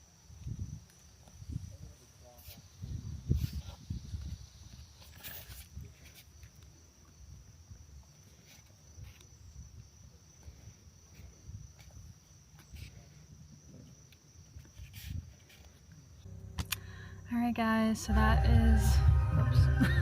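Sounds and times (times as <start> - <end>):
low rumble: 16.3 - 20.0.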